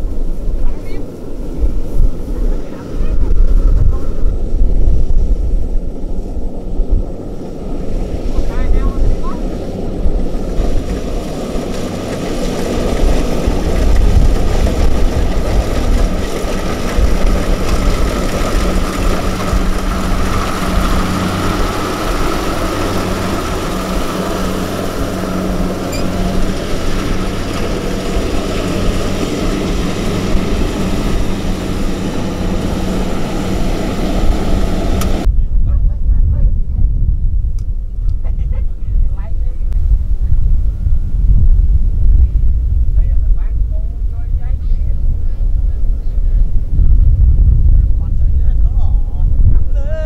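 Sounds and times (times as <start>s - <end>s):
farm machinery engine running: 0.0s - 35.3s.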